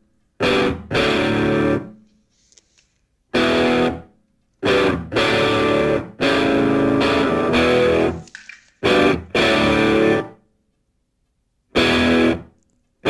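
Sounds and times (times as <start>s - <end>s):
distorted electric guitar chords: 0.4s - 2.0s, 3.4s - 4.0s, 4.6s - 8.2s, 8.8s - 10.4s, 11.8s - 12.5s.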